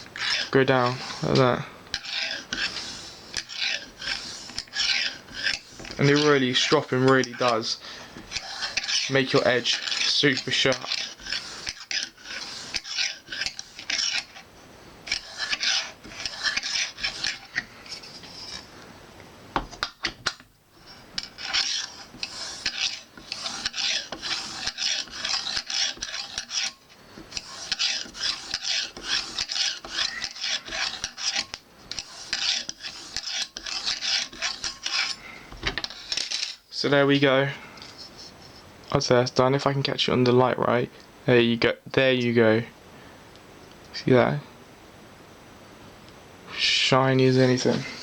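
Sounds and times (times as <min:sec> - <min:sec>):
knife rasping on leather strop: 0:00.2 - 0:07.6, 0:08.2 - 0:14.4, 0:15.1 - 0:18.6, 0:20.8 - 0:36.3.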